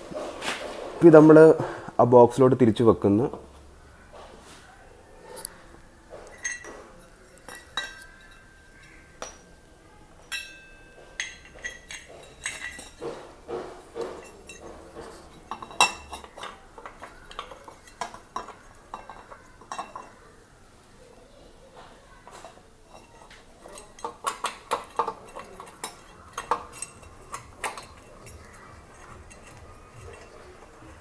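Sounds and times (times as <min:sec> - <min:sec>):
metallic clinks and knocks: 0:05.4 - 0:20.2, 0:22.2 - 0:31.0.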